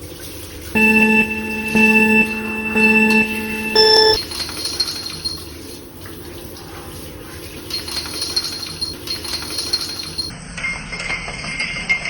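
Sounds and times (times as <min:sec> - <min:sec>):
bath water running and splashing: 0:04.3 - 0:10.3.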